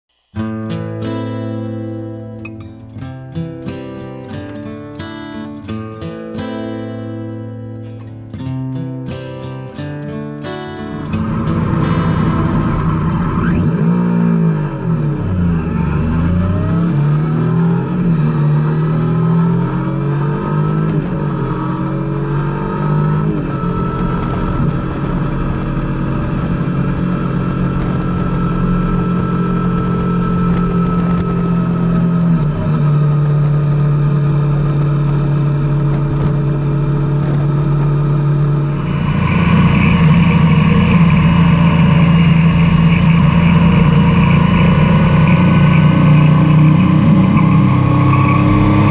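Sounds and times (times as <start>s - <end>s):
motorcycle engine revving: 10.7s - 48.9s.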